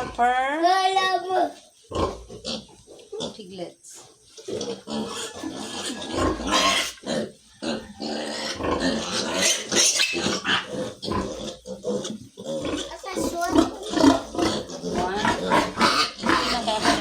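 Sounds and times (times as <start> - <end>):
piglets squealing: 4.5 - 17.0.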